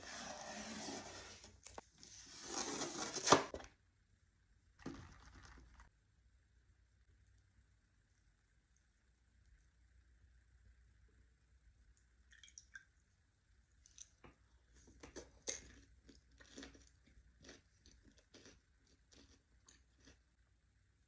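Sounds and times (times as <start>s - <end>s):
chewing crunchy chocolates: 15.0s - 20.3s.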